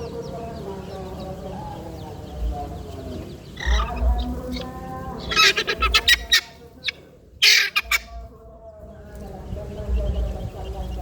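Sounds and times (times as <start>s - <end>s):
bird squawking: 3.6s - 8.2s.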